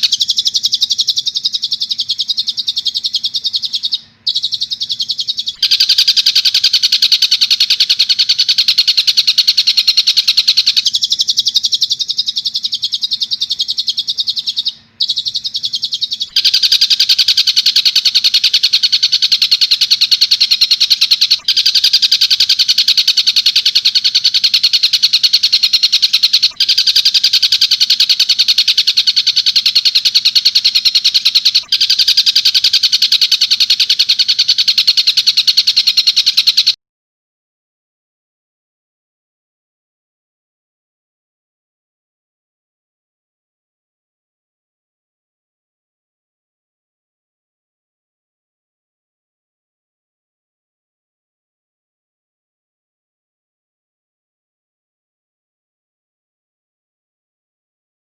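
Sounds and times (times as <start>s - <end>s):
bird rattling trill: 0.0s - 36.8s.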